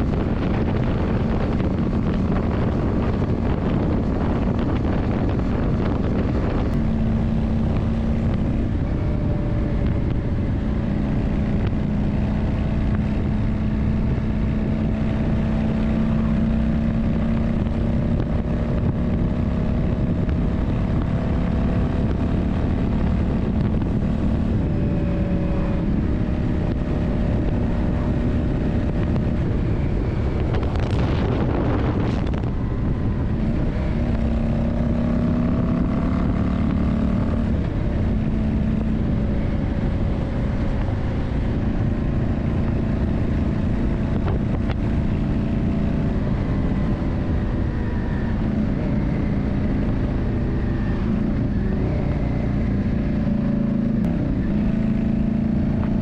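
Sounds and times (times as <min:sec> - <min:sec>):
motorcycle engine running: 0:00.0 - 0:56.0
wind noise on microphone: 0:00.0 - 0:56.0.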